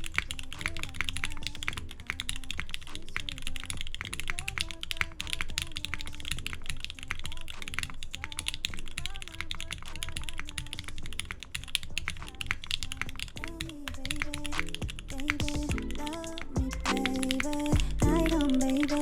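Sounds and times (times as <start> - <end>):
mechanical keyboard typing: 0.0 - 19.0
quiet background music: 11.9 - 19.0.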